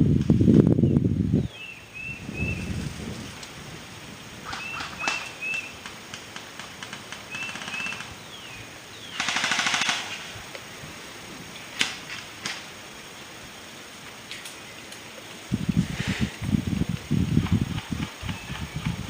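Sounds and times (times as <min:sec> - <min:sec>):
airsoft guns firing bursts: 0:04.4 - 0:08.1, 0:09.1 - 0:10.3.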